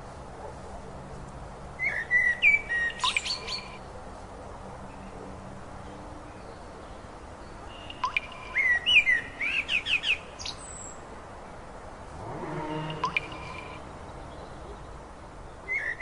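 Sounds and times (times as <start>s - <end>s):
bird singing whistled notes: 1.8s - 3.7s, 15.7s - 16.0s
steady background hiss: 5.6s - 16.0s.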